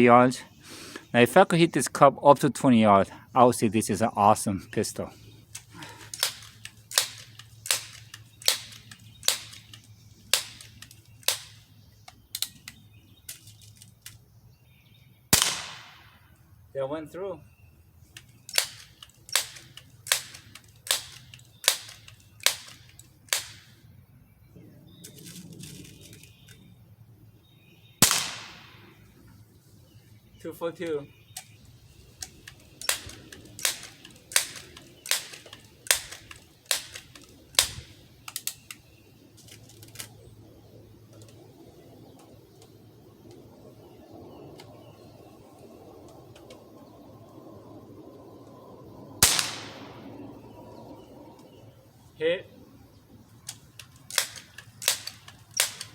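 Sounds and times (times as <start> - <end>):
light scattered clicks: 5.5 - 14.2, 18.1 - 23.7, 32.2 - 38.8, 53.4 - 55.9.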